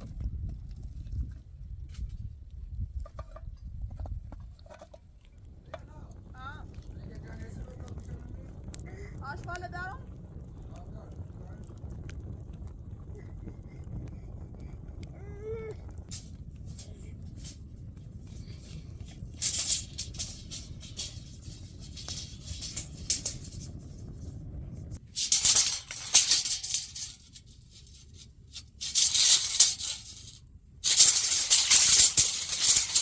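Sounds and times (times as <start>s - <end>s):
low rumble: 5.4s - 33.0s
rattling shaking noise: 18.4s - 24.2s, 25.0s - 33.0s.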